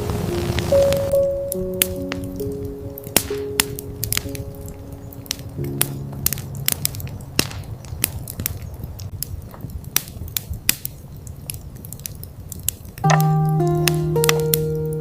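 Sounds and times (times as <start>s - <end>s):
music with held notes: 0.0s - 7.2s, 13.0s - 15.0s
crisp crunching and crackling: 2.1s - 13.4s.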